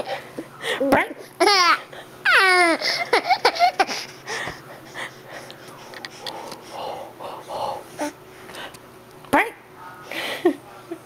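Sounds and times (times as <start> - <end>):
toddler wheezing laughter: 1.4 - 4.2.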